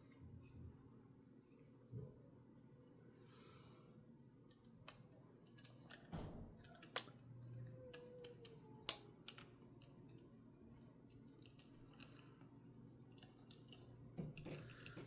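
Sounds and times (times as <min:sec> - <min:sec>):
plastic parts clicking: 0:04.9 - 0:10.2, 0:11.2 - 0:12.5, 0:13.1 - 0:15.0.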